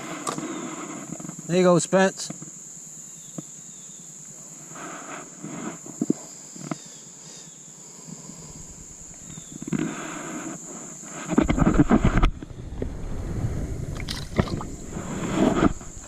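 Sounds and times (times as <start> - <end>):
high insect drone: 0.0 - 16.0
knocks and rustling: 11.3 - 16.0
loud low rumble: 12.2 - 16.0.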